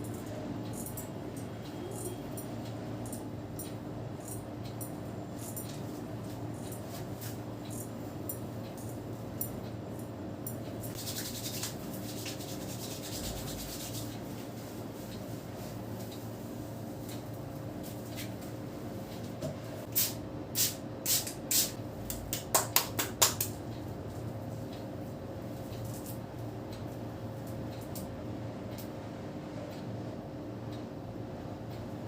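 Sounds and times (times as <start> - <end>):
steady low hum: 0.0 - 32.0
hands rubbing scalp through hair: 11.0 - 14.7.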